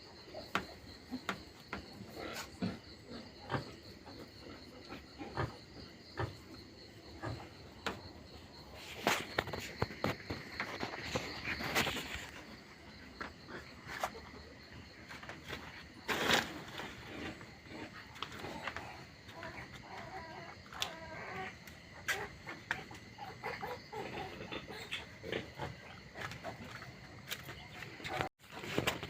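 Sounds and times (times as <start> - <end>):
pigs grunting: 0.2 - 29.0
knocks and rustling: 7.2 - 14.2.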